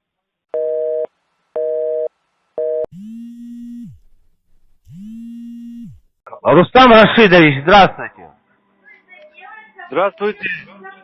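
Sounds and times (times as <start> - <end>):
long low telephone tones: 0.5 - 4.0.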